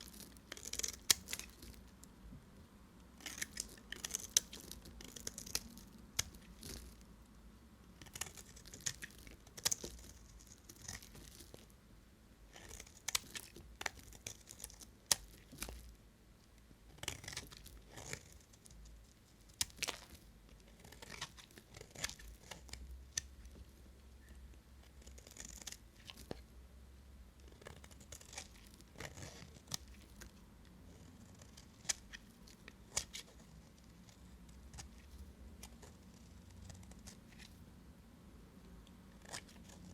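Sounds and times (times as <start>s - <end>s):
knife cutting bar soap: 3.2s - 7.0s, 17.0s - 18.4s, 19.6s - 23.6s.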